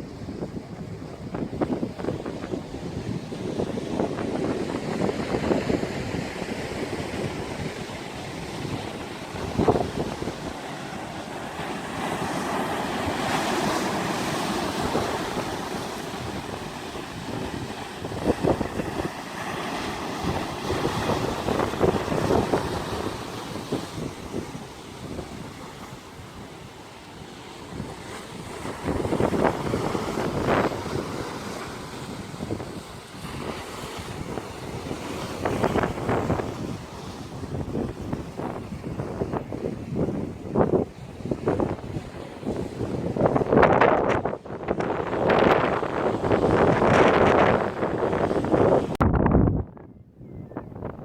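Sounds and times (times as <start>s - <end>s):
sea waves on shore: 0.0s - 49.0s
wind on microphone: 0.0s - 51.0s
gusts thumping microphone: 37.5s - 50.0s.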